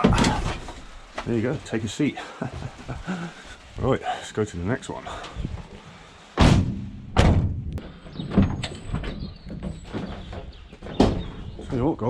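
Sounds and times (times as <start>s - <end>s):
van doors slamming: 0.0s - 0.9s, 6.4s - 9.3s
light thuds and knocks: 6.4s - 12.0s.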